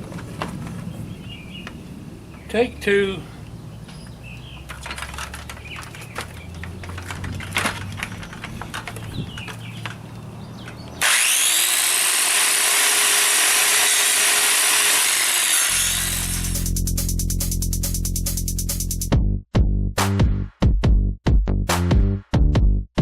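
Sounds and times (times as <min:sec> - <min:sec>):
circular saw cutting wood: 0:11.0 - 0:16.8.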